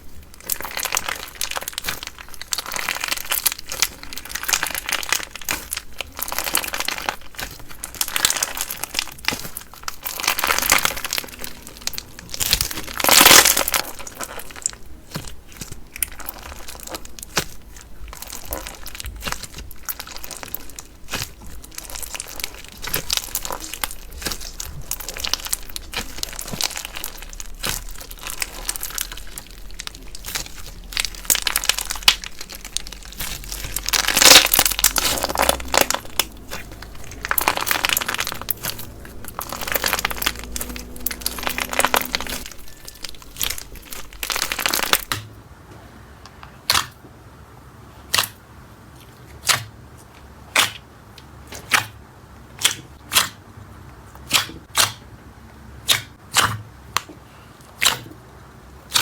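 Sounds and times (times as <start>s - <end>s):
slime crackling and popping: 0.0s - 45.3s, 48.0s - 48.4s, 57.8s - 58.2s.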